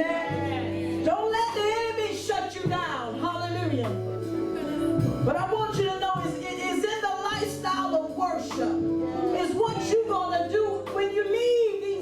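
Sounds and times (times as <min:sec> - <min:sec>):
held low instrumental notes: 0:00.0 - 0:11.1.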